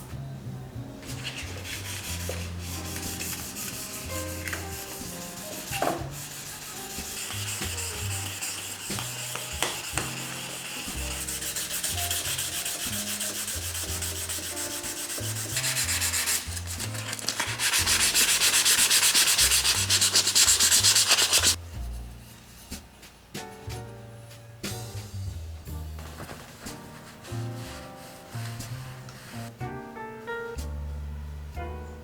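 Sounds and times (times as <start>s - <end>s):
abrasive rubbing on metal: 1.1s - 21.6s.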